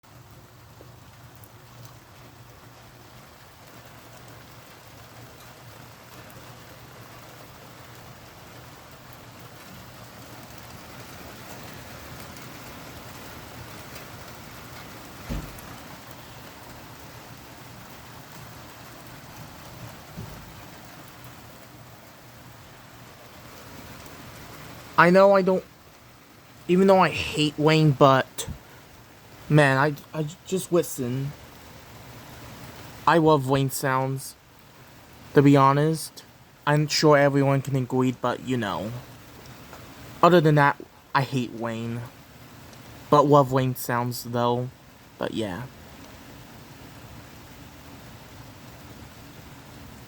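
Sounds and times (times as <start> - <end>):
steady rain falling: 0.0 - 50.0
low thump: 15.3 - 15.7.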